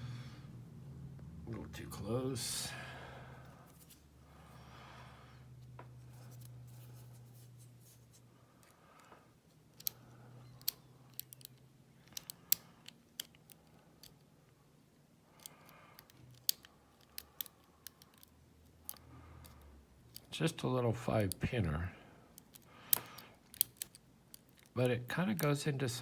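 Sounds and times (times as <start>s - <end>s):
lock pick clicking on pins: 9.6s - 14.3s, 15.3s - 21.6s, 22.3s - 25.6s.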